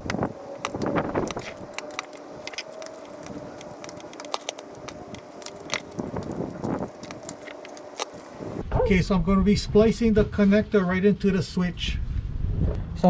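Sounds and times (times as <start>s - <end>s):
ratchet clicking: 0.0s - 8.5s.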